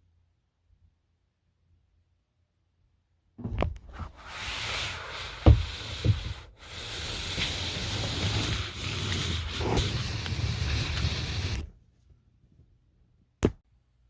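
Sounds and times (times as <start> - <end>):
rubbing hissing handling noise: 4.0 - 11.7.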